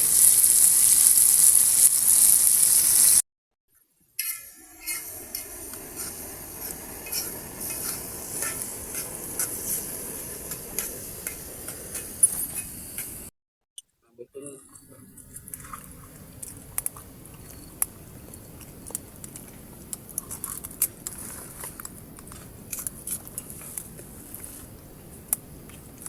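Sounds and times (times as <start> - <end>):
fire crackles and pops: 0.0 - 3.2, 4.7 - 13.3, 15.2 - 26.0
food sizzling over fire: 0.0 - 3.2, 4.2 - 13.3, 16.2 - 26.0.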